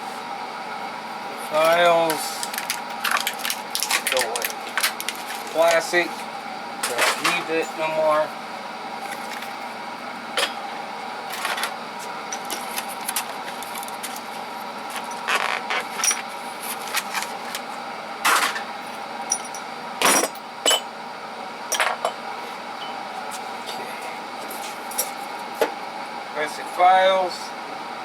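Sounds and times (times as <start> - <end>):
steady hum: 0.0 - 28.0
metal tools clinking and clattering: 16.0 - 16.2, 19.3 - 20.9.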